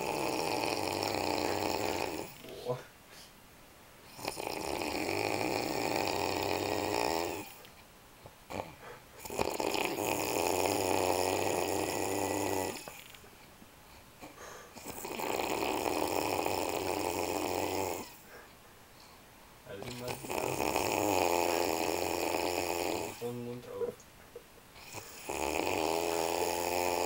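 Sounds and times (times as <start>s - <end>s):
man snoring: 0.0s - 2.8s, 4.1s - 7.6s, 8.5s - 13.1s, 14.2s - 18.3s, 19.8s - 23.9s, 24.8s - 27.0s.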